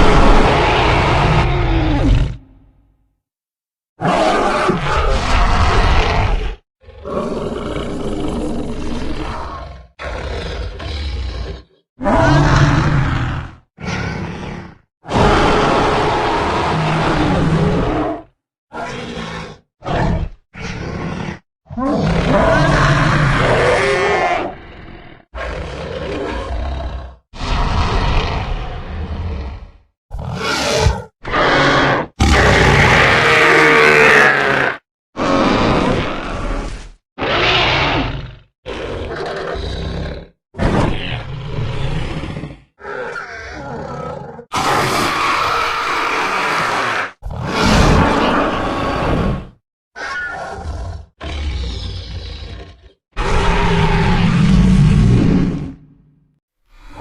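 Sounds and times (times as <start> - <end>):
monster roar: 0.0 - 2.7, 4.0 - 56.2, 56.8 - 57.0
deep rough growls: 50.5 - 57.0.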